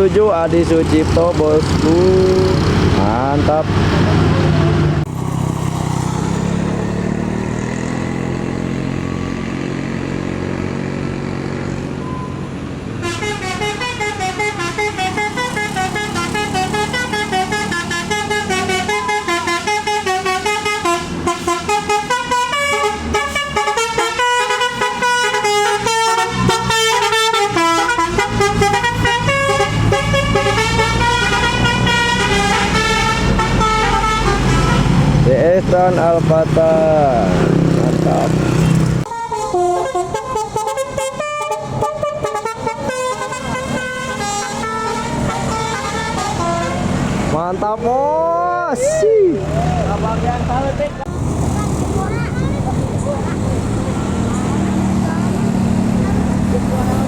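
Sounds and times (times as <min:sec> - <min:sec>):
bus engine running: 0:00.0 - 0:57.0
multi-tone bus horn melody: 0:12.0 - 0:35.2, 0:39.0 - 0:47.4.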